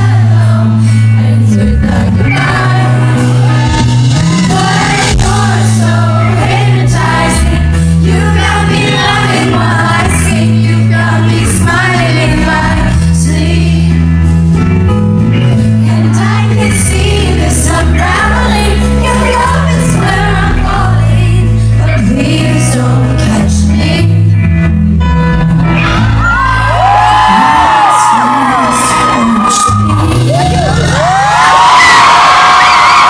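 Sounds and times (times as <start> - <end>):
woman singing: 0.0 - 14.2, 15.8 - 24.5
bass line: 0.0 - 33.0
live pop band: 0.0 - 33.0.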